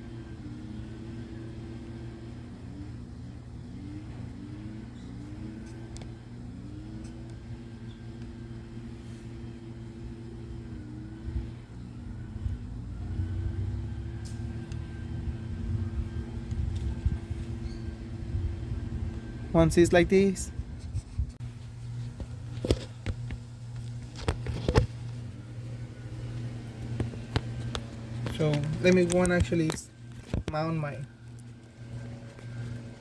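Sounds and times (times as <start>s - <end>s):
vehicle engine revving: 0.0s - 19.5s.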